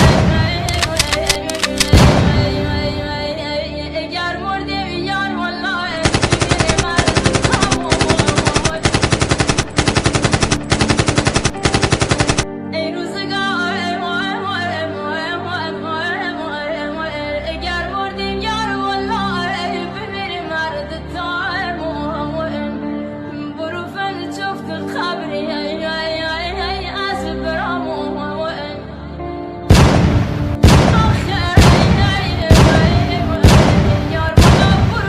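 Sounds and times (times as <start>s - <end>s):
machine-gun fire: 0.0s - 3.0s, 5.9s - 12.5s, 29.7s - 35.0s
person singing over music: 0.0s - 9.6s, 30.8s - 35.0s
music: 0.0s - 35.0s.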